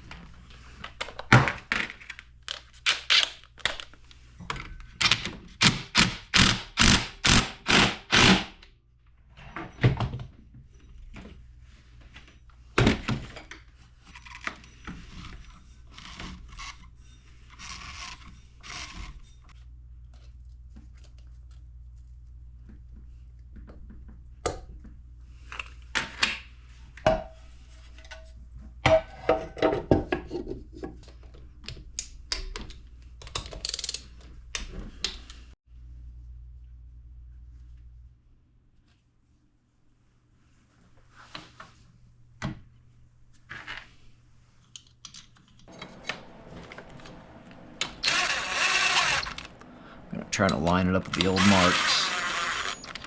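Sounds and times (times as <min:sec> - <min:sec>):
metal parts clicking and scraping: 0:33.2 - 0:34.2, 0:47.8 - 0:49.7, 0:50.3 - 0:53.0.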